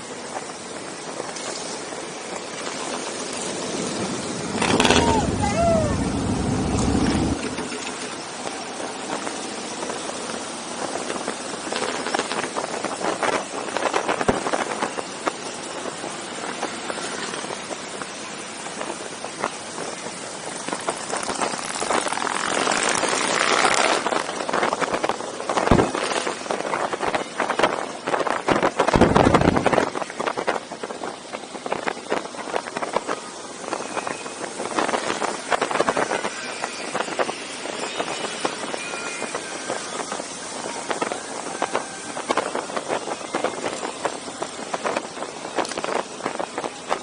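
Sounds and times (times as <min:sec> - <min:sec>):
motorcycles running: 0:00.0 - 0:47.0
steady rushing noise: 0:00.0 - 0:47.0
heavy low rumble: 0:03.7 - 0:07.8.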